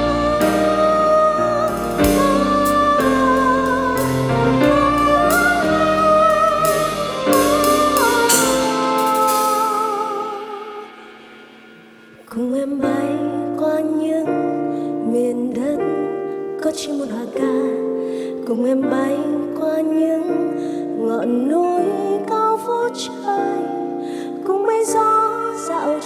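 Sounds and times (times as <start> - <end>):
low bass: 0.0 - 9.2
wavering lead melody: 0.0 - 12.6
drum hits: 0.0 - 13.1
keyboard chords: 0.0 - 26.0.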